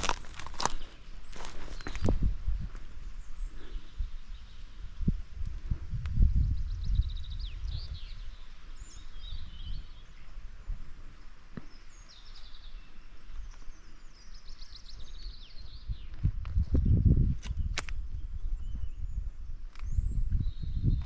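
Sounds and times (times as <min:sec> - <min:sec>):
songbird singing: 0:00.0 - 0:21.0.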